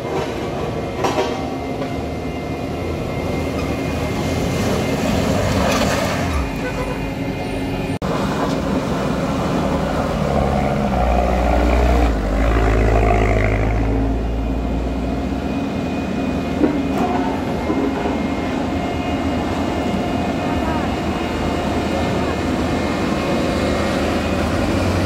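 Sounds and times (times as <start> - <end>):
diesel truck engine labouring: 17.0 - 25.0.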